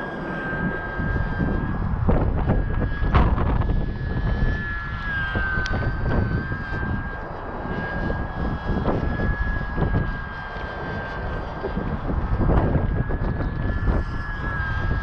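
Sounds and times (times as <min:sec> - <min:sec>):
rc plane motor whining: 0:00.0 - 0:15.0
wind buffeting microphone: 0:00.0 - 0:15.0.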